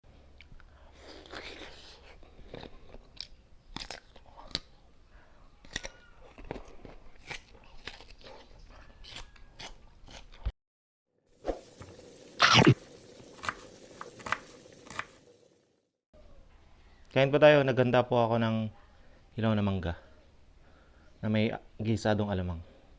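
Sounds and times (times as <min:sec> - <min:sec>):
crunching bites and chewing: 0:00.4 - 0:04.8, 0:05.6 - 0:10.5.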